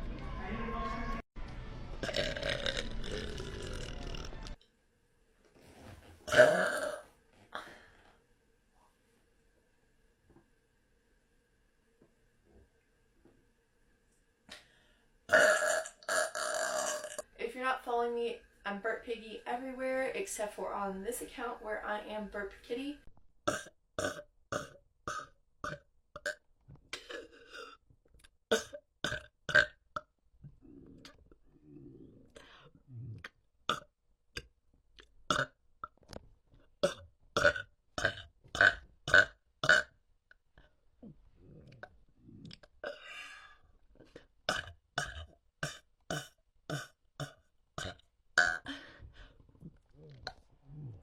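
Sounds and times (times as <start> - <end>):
person burping: 2.0 - 4.6, 6.3 - 7.0, 15.3 - 17.2, 23.5 - 27.8, 28.5 - 29.8, 32.9 - 33.9, 35.3 - 35.6, 36.8 - 39.9, 41.0 - 43.1, 44.5 - 48.8
woman burping: 6.3 - 7.0, 15.3 - 17.2, 44.5 - 48.8.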